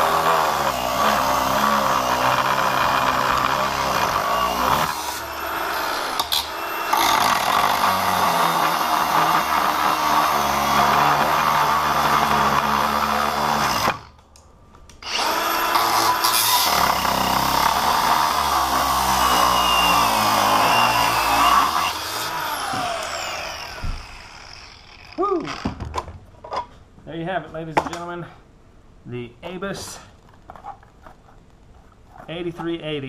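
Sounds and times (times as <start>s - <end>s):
angle grinder cutting steel: 0.0s - 14.1s, 15.0s - 25.6s.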